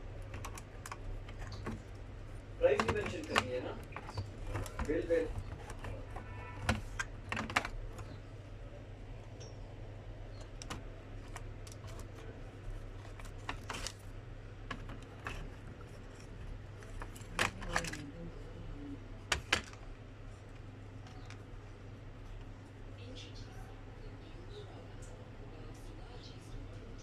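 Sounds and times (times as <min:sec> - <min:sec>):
steady low hum: 0:00.0 - 0:27.0
small hard parts clicking: 0:02.6 - 0:08.2.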